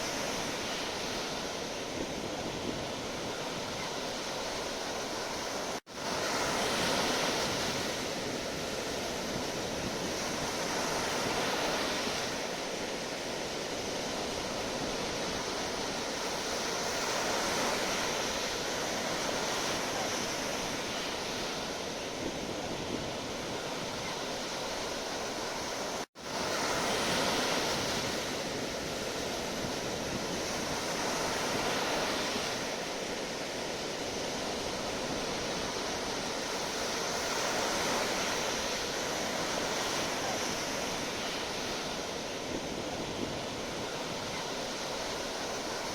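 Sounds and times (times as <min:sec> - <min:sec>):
sea waves washing onto shore: 0:00.0 - 0:45.9.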